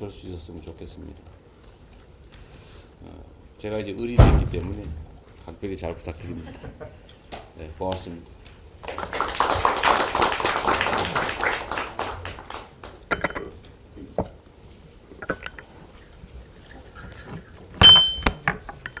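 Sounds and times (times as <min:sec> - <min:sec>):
applause: 0:08.8 - 0:13.0
glass clink: 0:13.1 - 0:14.2, 0:15.2 - 0:19.0.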